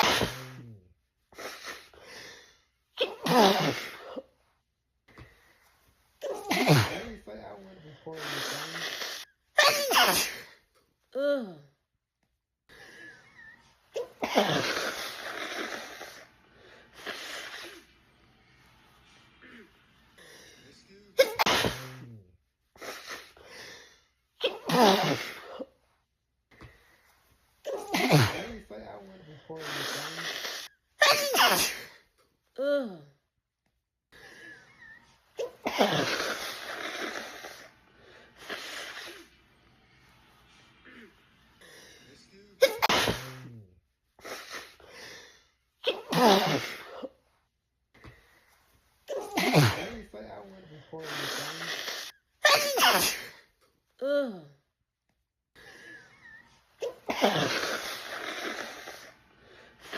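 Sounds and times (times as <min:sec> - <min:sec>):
woman sneezing: 0:00.0 - 0:00.8, 0:03.0 - 0:04.3, 0:06.2 - 0:10.6, 0:13.4 - 0:16.2, 0:21.2 - 0:22.2, 0:24.4 - 0:25.7, 0:27.6 - 0:32.0, 0:34.8 - 0:37.7, 0:42.6 - 0:44.9, 0:45.8 - 0:47.2, 0:49.1 - 0:54.6, 0:56.2 - 0:59.1.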